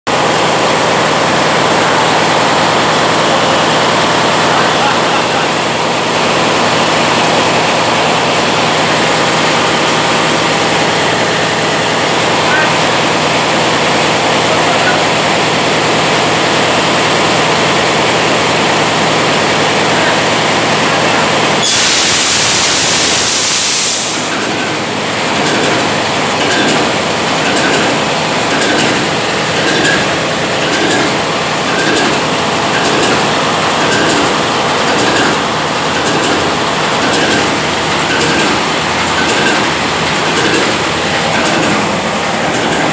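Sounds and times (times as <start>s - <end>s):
diesel engine running: 0.1s - 42.9s
loud rush of air: 21.6s - 24.6s.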